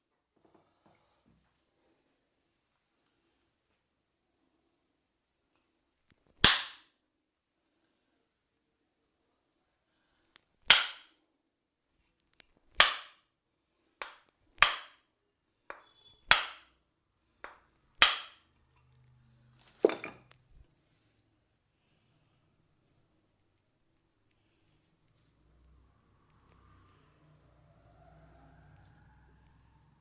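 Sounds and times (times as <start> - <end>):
massage hammer striking: 6.4 - 6.9, 10.7 - 11.1, 12.8 - 13.2, 14.0 - 15.0, 15.7 - 16.7, 17.5 - 18.5.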